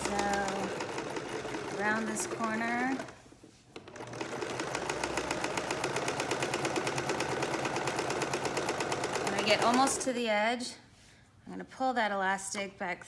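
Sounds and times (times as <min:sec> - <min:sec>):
sewing machine stitching: 0:00.0 - 0:10.1.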